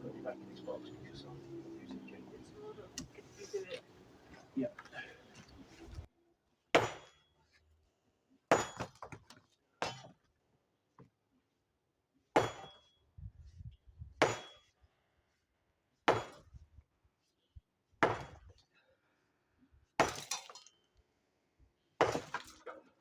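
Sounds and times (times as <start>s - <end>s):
hammer striking masonry: 6.8s - 7.4s, 8.5s - 10.2s, 12.4s - 12.9s, 14.2s - 14.7s, 16.1s - 16.5s, 18.0s - 18.6s, 20.0s - 20.6s, 22.0s - 22.6s
falling rubble clatter: 20.0s - 20.7s.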